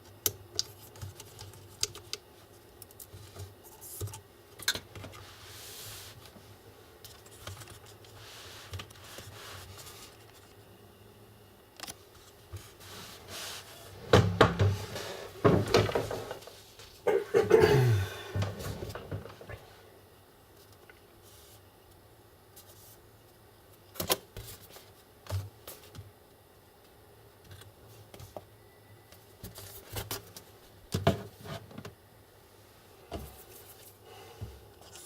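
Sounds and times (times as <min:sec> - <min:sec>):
loud knocks and rattles: 0:14.1 - 0:16.4.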